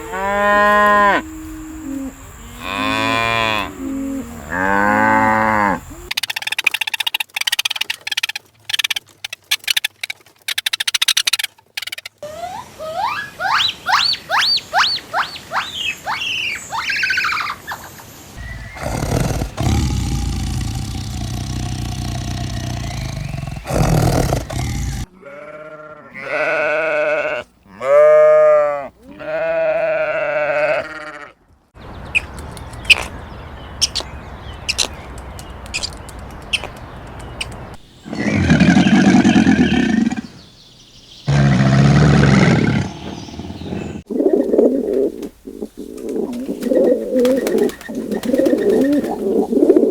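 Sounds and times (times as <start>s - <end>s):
loud rough animal calls: 18.4s - 31.3s, 38.1s - 40.4s, 41.3s - 44.1s
goat bleating: 25.1s - 28.0s, 28.6s - 31.4s.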